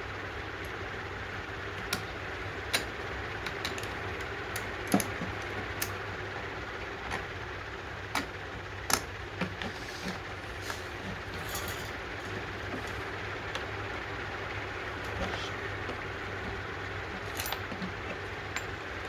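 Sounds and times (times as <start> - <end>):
steady background hum: 0.0 - 19.0
small metal parts clicking: 17.2 - 18.8.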